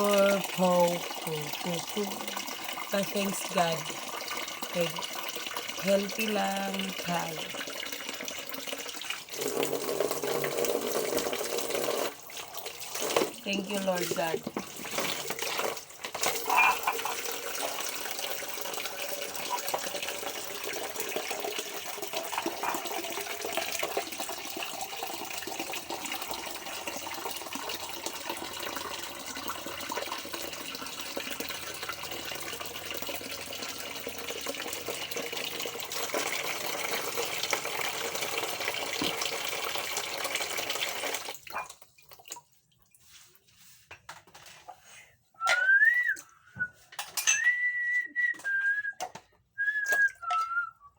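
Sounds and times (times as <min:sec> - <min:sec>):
tap water running into sink: 0:00.0 - 0:43.1.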